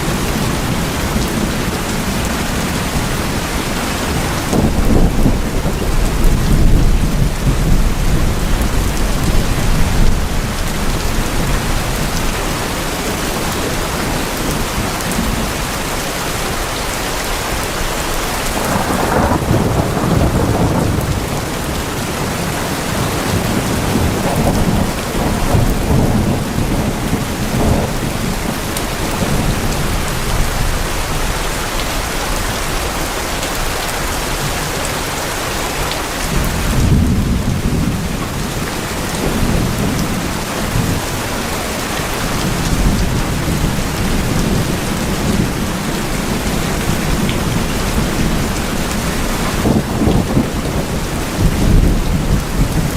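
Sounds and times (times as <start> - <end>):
rain on tin roofs: 0.0 - 52.9
deep rumbling: 18.5 - 31.0.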